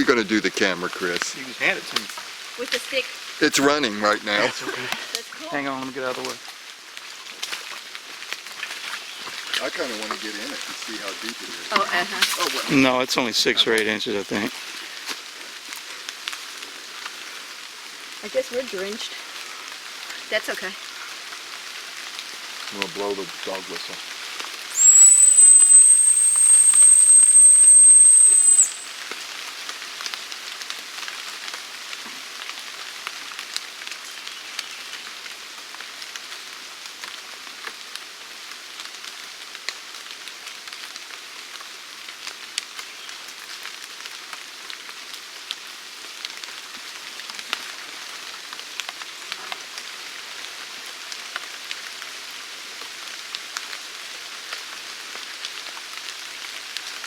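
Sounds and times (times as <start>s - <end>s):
steady rain falling: 0.0s - 57.0s
high-pitched dog whistle: 24.7s - 29.0s.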